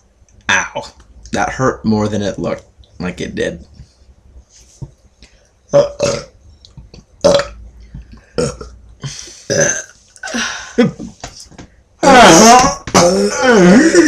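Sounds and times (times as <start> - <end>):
person burping: 5.7 - 6.3, 7.2 - 7.6, 8.2 - 11.2, 12.0 - 14.0.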